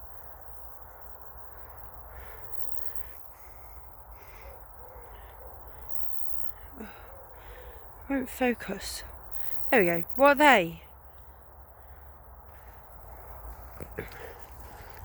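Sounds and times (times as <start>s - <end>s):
bird calling: 2.0s - 11.3s.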